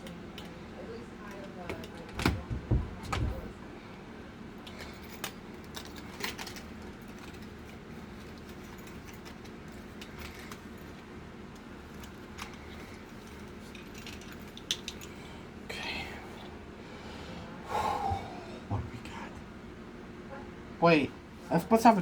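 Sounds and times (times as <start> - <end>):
steady low hum: 0.0 - 22.0
heavy bumps: 2.1 - 3.5
keys clinking and jangling: 4.6 - 15.2.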